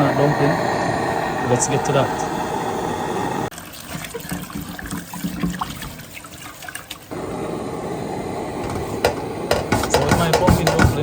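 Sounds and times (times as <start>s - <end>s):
steady hiss: 0.0s - 3.5s, 7.1s - 11.0s
water trickling and dripping: 3.5s - 7.1s.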